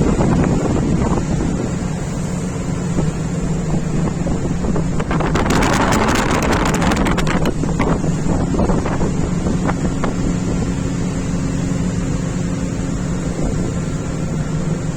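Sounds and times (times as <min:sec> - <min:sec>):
wind buffeting microphone: 0:00.0 - 0:11.6
boat engine humming: 0:00.0 - 0:14.9
wave splashing against boat: 0:00.0 - 0:14.9.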